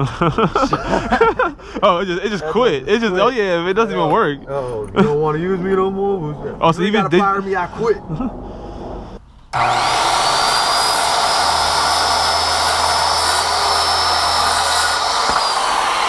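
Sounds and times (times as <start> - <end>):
circular saw cutting wood: 9.5 - 16.0.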